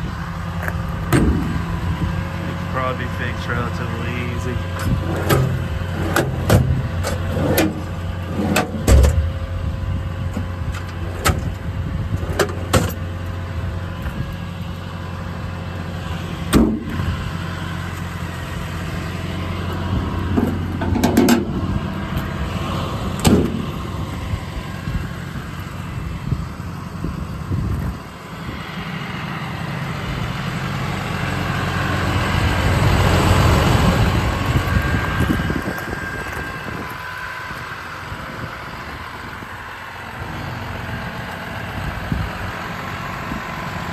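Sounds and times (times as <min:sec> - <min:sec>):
engine idling: 0:00.0 - 0:43.9
sharp knocks and clunks: 0:01.0 - 0:01.7, 0:04.8 - 0:09.4, 0:16.5 - 0:17.0, 0:20.3 - 0:21.6, 0:23.2 - 0:23.8.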